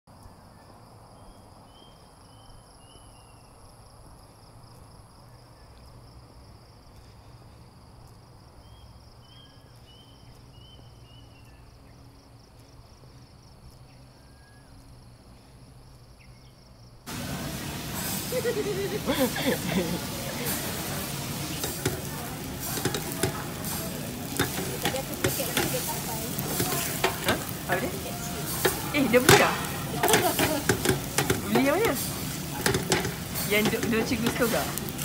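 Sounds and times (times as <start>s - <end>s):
high-pitched insect trill: 0.2s - 17.0s
small bird chirps: 8.6s - 12.2s
loud hissing noise: 17.1s - 35.0s.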